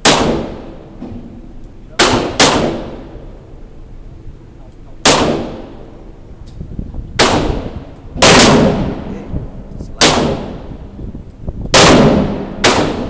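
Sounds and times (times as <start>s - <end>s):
handgun shots echoing: 0.0s - 0.8s, 2.0s - 3.1s, 5.0s - 5.8s, 7.2s - 9.0s, 10.0s - 10.6s, 11.7s - 13.0s.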